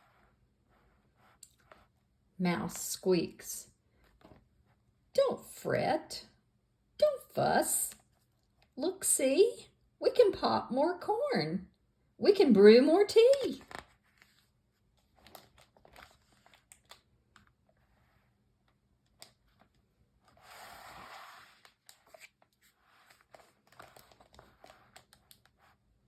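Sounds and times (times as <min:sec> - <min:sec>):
page turning rustle: 0:13.4 - 0:18.0, 0:19.1 - 0:25.8.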